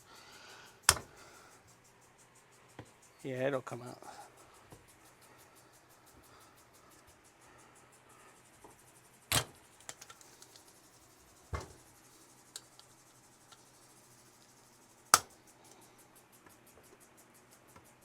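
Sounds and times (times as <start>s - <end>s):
faint fast high ticking: 0.0s - 18.0s
hand tools clicking and knocking: 9.3s - 10.6s.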